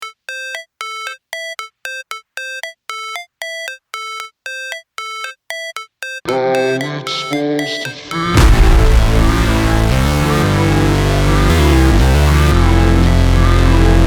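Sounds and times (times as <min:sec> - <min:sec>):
repeated synth note: 0:00.0 - 0:14.0
music track with bass: 0:08.4 - 0:14.0.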